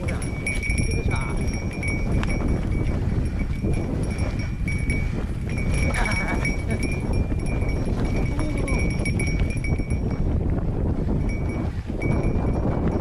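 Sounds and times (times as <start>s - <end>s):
thin high ringing: 0.0s - 10.1s.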